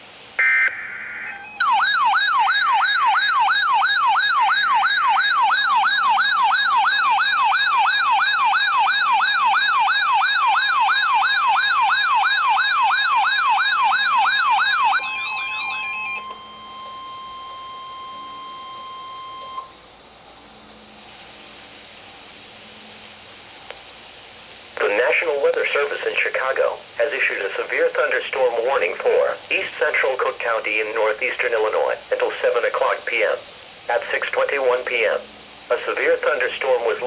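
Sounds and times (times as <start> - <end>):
electronic siren-like attention tone: 0.4 - 19.7.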